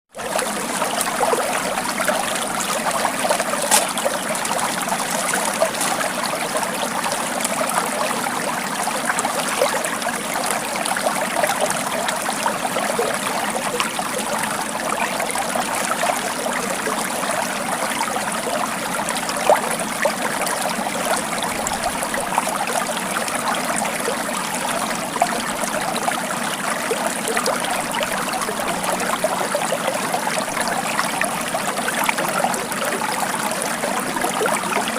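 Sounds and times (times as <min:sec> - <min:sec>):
stream babbling over stones: 0:00.1 - 0:34.9.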